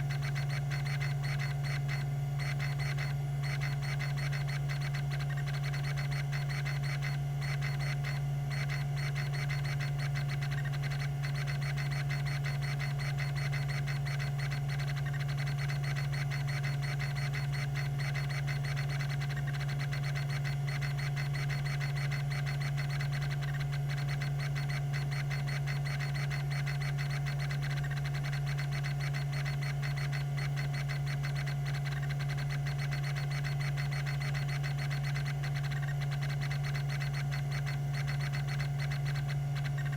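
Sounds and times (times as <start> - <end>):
hard drive hum and whine: 0.0 - 39.9.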